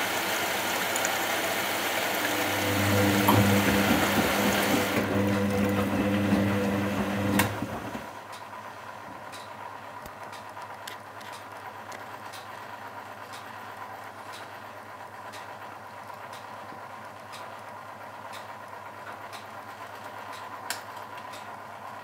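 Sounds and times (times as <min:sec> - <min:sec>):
washing machine running: 0:00.0 - 0:09.1
loud electric hum: 0:01.4 - 0:08.1.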